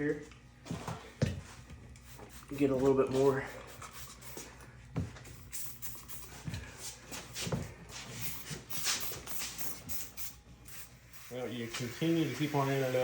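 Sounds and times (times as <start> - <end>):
spray bottle hissing: 3.6 - 4.5, 5.4 - 6.4, 8.1 - 13.0.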